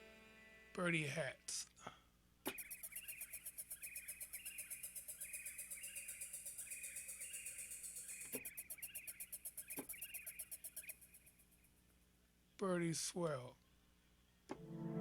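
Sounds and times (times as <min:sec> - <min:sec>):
synthesizer bird-like chirps: 0:02.5 - 0:11.6
synthesizer hi-hat ticks: 0:02.5 - 0:11.8.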